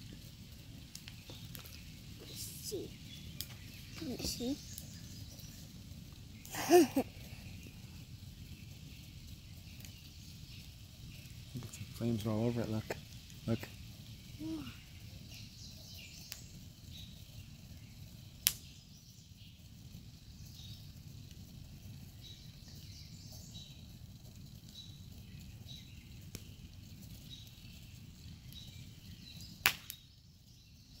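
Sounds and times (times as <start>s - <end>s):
campfire crackling: 0.0s - 31.0s
sharp pops: 18.4s - 18.7s, 29.6s - 30.0s.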